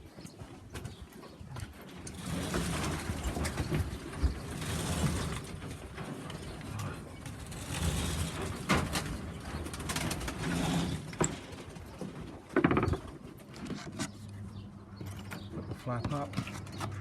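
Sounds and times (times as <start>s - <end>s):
rapid clatter: 1.9s - 13.1s.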